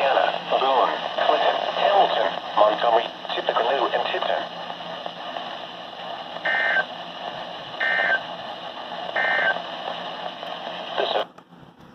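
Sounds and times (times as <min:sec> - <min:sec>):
steady radio hiss: 0:00.0 - 0:11.9
buzzy two-tone digital chirps: 0:06.5 - 0:06.9, 0:07.8 - 0:08.2, 0:09.2 - 0:09.6.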